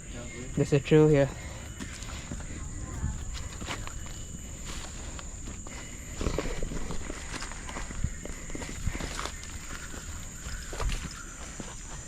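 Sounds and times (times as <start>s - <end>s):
high-pitched whine: 0.0s - 12.0s
footsteps on dirt trail: 1.3s - 12.0s.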